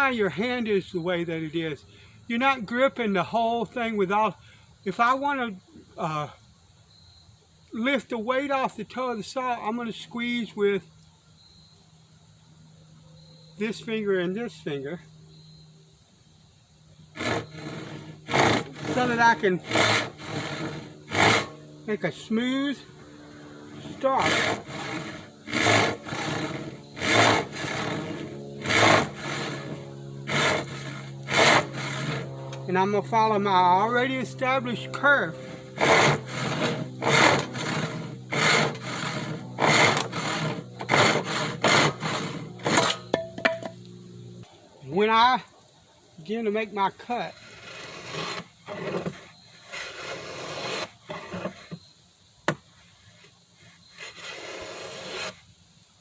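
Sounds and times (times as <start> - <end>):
hand saw cutting board: 17.2 - 22.8, 23.6 - 43.7, 47.4 - 51.8, 53.6 - 55.4.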